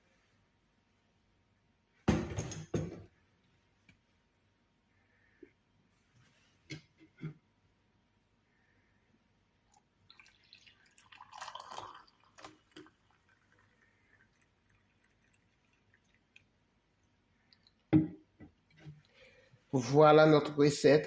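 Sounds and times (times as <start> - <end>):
liquid dripping: 9.7 - 17.9.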